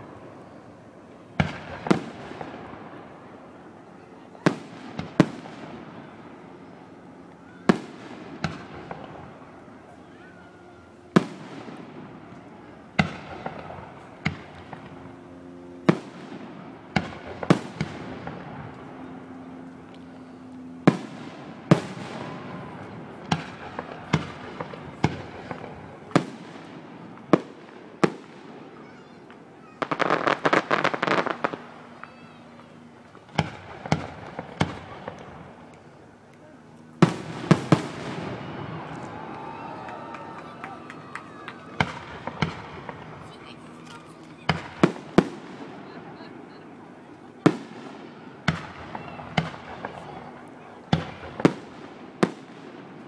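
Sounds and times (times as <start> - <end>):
dense firework crackling: 0.0 - 53.0
firework shells bursting: 29.3 - 32.1.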